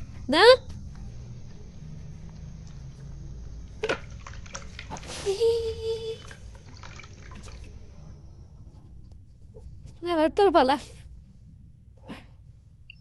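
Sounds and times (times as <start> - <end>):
water splash: 3.8 - 5.5, 6.2 - 7.8.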